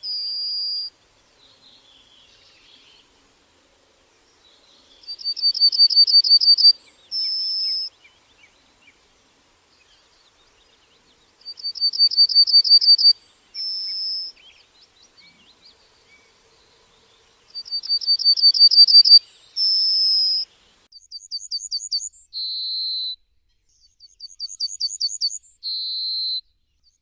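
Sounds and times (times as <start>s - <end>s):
faint birds twittering: 0.0s - 20.9s
bird singing: 0.0s - 22.5s.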